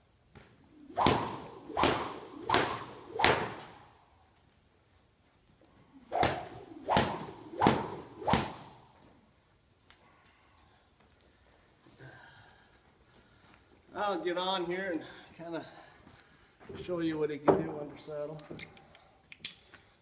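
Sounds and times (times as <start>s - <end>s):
sharp whip-like slaps: 0.4s - 4.0s, 6.1s - 9.0s.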